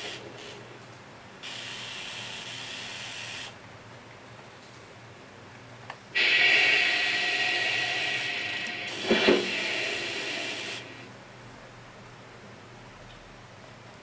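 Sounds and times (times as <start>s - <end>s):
train hiss from small speaker: 1.4s - 3.6s, 6.2s - 11.1s.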